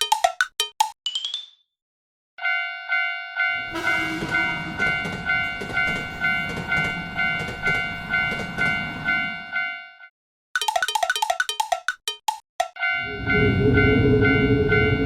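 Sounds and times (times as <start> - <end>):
railroad crossing bell ringing: 2.4 - 11.2, 12.8 - 15.0
train rumbling past: 3.7 - 9.3, 13.1 - 15.0
wheels clacking over rail joints: 3.9 - 8.9.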